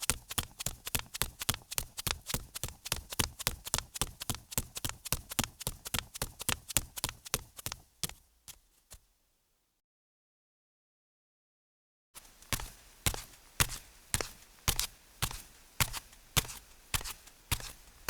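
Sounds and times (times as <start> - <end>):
bare feet slapping on concrete: 0.0 - 8.6, 12.2 - 17.9.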